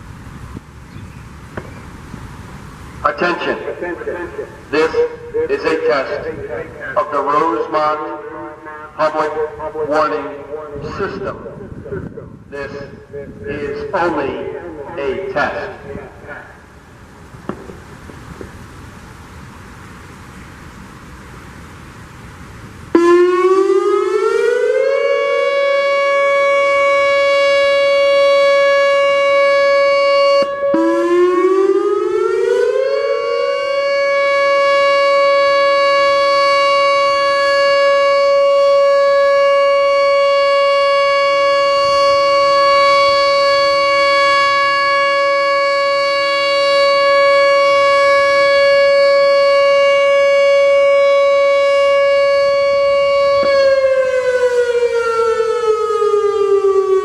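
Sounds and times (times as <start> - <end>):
electronic warning siren: 2.9 - 16.8, 22.9 - 57.0.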